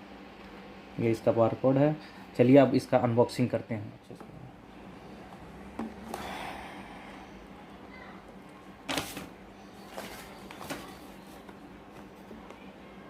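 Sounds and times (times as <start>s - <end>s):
cardboard box rustling: 9.8s - 11.6s.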